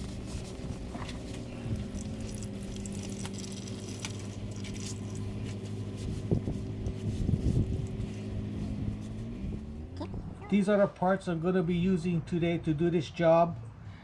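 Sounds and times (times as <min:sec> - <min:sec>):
steady low hum: 0:00.0 - 0:12.5.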